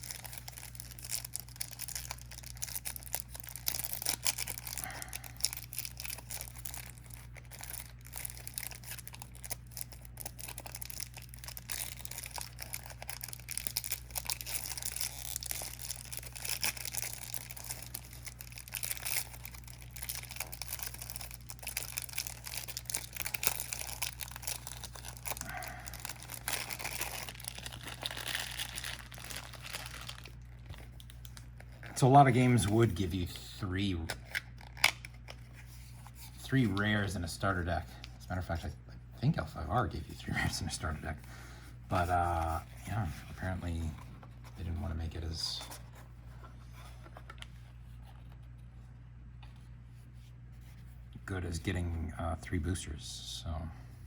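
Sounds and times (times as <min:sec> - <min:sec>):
plastic wrapping crinkling and tearing: 0:00.0 - 0:33.1, 0:34.1 - 0:36.8.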